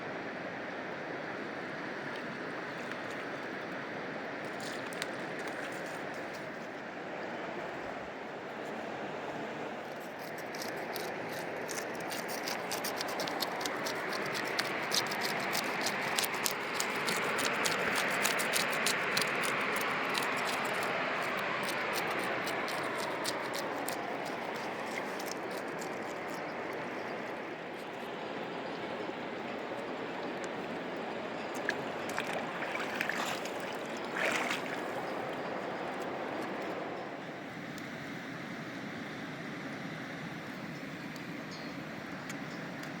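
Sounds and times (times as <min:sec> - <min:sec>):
river water flowing: 0:06.8 - 0:38.2.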